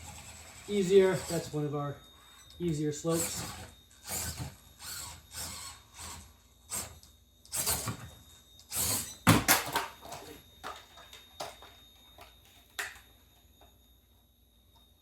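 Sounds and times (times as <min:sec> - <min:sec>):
plastic pieces knocking and scraping: 0:09.3 - 0:13.0.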